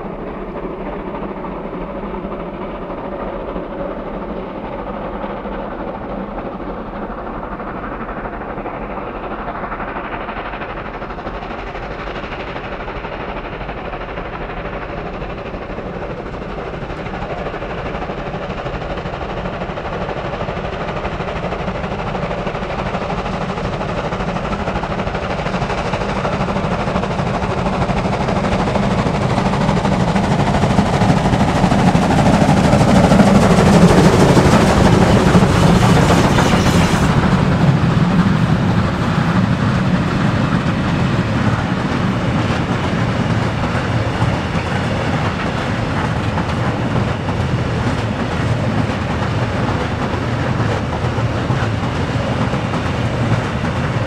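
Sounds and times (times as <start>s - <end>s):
steam locomotive passing: 0.0s - 54.0s.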